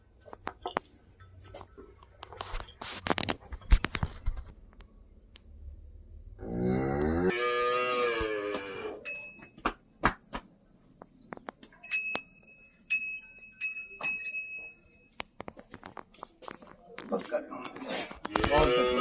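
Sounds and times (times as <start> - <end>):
cow mooing: 6.4 - 9.0, 18.4 - 19.0
high metallic ringing: 8.8 - 9.6, 11.7 - 15.4.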